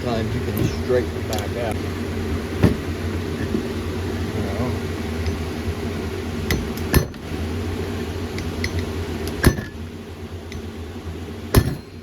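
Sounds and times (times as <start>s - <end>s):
steady low hum: 0.0s - 12.0s
sharp metal strikes: 11.5s - 12.0s.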